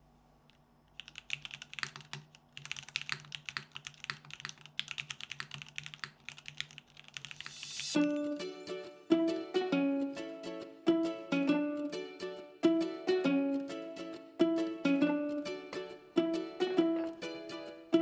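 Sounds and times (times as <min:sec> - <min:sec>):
plucked-string music: 0:07.9 - 0:18.0.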